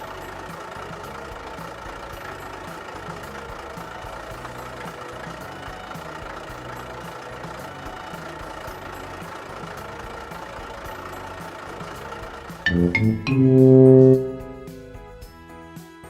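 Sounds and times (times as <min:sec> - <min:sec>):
truck diesel engine idling: 0:00.0 - 0:12.5.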